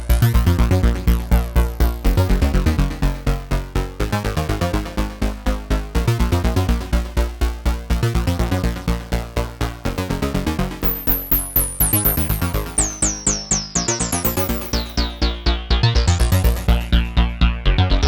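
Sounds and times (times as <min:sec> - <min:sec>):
high falling synth chirp: 0:10.8 - 0:15.3.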